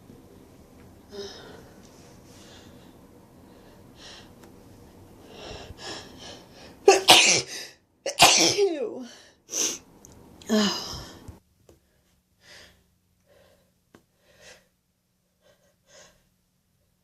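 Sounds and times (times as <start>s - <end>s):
woman sneezing: 8.1s - 8.8s.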